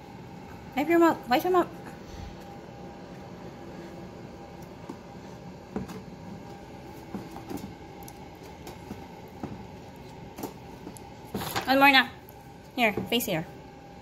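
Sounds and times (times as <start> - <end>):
room hum: 0.0 - 14.0.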